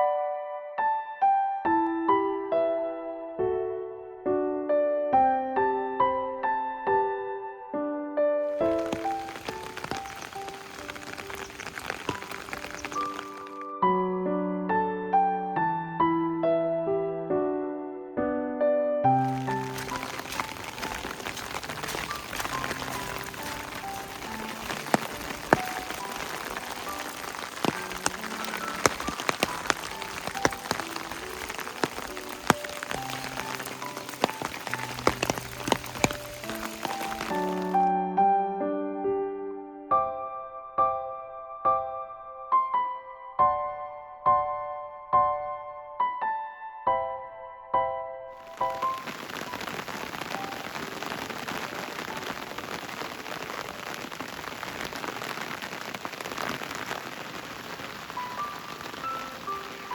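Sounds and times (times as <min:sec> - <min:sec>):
rain drops hitting: 0:08.5 - 0:13.7, 0:19.1 - 0:37.9, 0:48.4 - 0:59.9.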